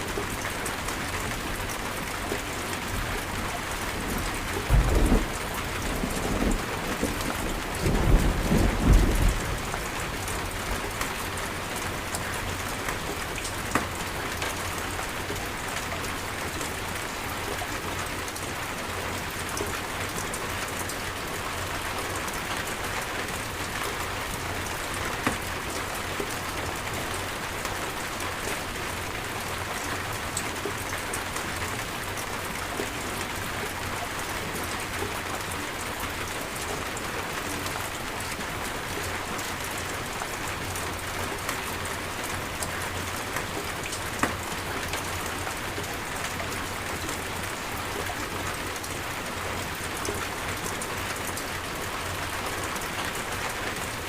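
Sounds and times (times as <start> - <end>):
heavy rain falling: 0.0 - 54.0.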